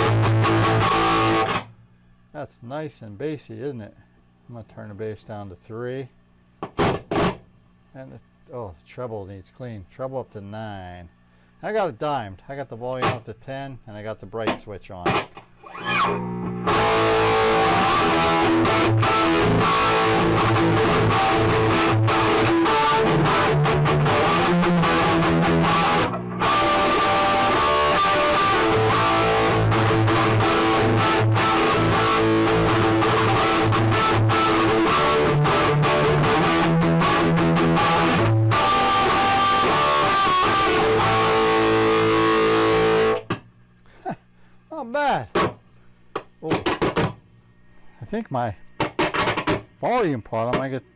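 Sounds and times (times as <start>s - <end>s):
loud electric guitar: 0.0s - 1.7s, 15.0s - 43.4s.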